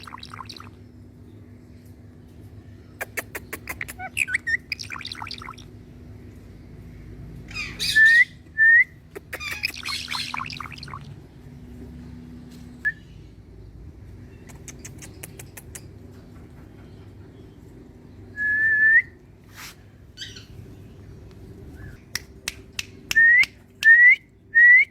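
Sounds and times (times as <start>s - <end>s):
parrot squawking and chattering: 3.0s - 5.7s, 7.5s - 8.4s, 9.1s - 11.1s.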